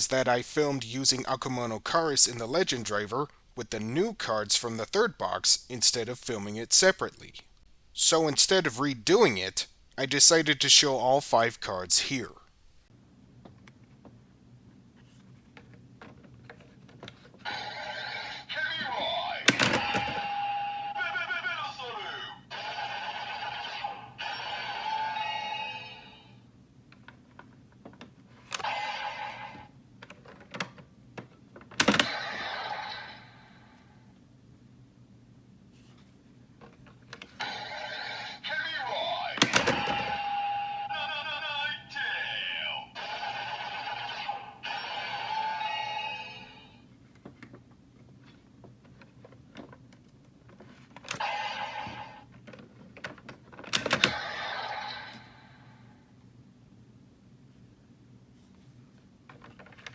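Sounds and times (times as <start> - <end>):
toy electronic sound effect: 22.5 - 26.1, 28.6 - 29.6, 42.9 - 46.7, 51.2 - 52.2.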